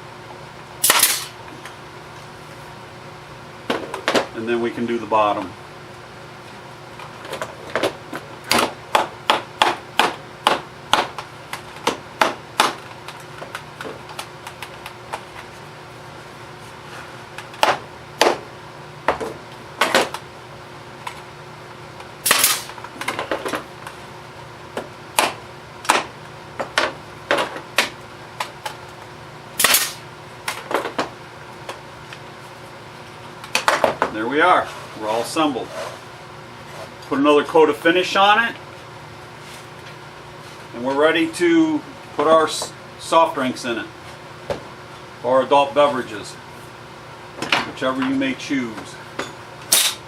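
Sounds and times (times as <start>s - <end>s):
brad nailer shooting into wood: 0.8s - 1.4s, 22.2s - 22.8s, 25.2s - 26.1s, 29.6s - 30.0s, 49.7s - 50.0s.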